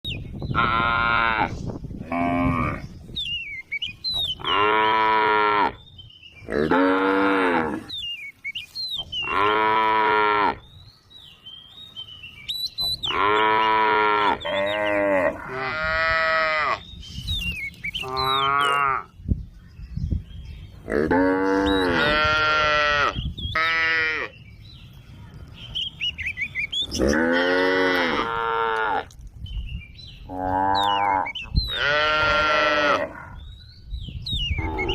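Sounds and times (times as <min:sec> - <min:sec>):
small birds chirping: 0:01.5 - 0:15.5, 0:16.5 - 0:34.9
cows mooing: 0:04.4 - 0:05.8, 0:06.5 - 0:07.9, 0:09.3 - 0:10.6, 0:13.0 - 0:16.8, 0:18.0 - 0:19.1, 0:20.9 - 0:24.3, 0:26.9 - 0:29.1, 0:30.3 - 0:33.4.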